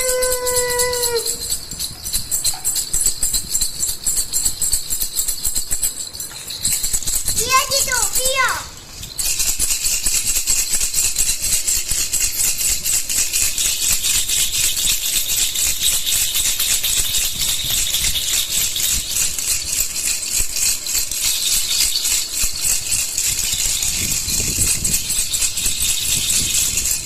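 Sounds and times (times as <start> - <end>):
baby rattle shaken: 0.0 - 27.0.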